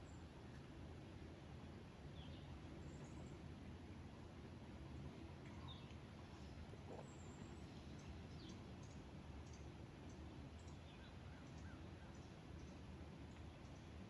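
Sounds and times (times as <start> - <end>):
faint bird chirps: 5.4 - 13.9.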